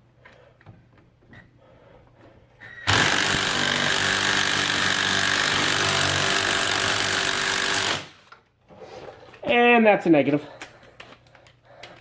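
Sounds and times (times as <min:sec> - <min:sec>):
impact wrench hammering: 0:02.9 - 0:08.2.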